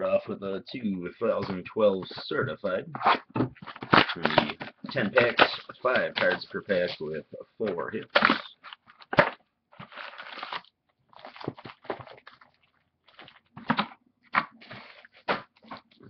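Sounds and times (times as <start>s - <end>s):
tearing and crinkling wrappers: 3.0s - 6.4s, 8.0s - 16.0s
cardboard clicks and crackles: 8.0s - 16.0s.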